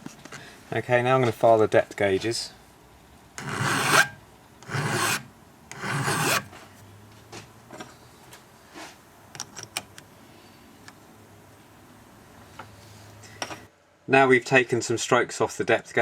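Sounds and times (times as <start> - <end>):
file rasping on metal chain: 3.4 - 6.5.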